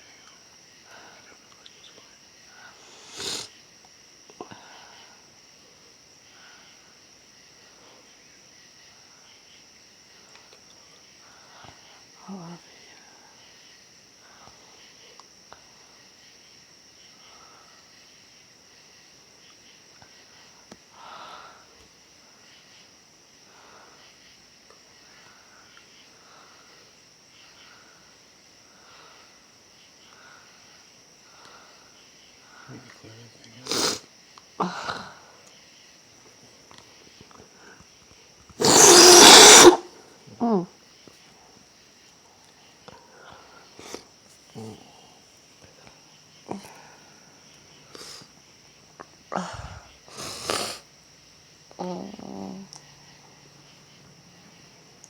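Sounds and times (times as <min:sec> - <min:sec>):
faint high-pitched hiss: 0:00.0 - 0:55.0
woman sniffling: 0:02.7 - 0:03.5, 0:33.7 - 0:34.0, 0:38.6 - 0:40.0, 0:49.3 - 0:50.9
woman blowing her nose: 0:02.8 - 0:03.5, 0:33.7 - 0:34.0, 0:38.6 - 0:39.9, 0:50.1 - 0:50.8.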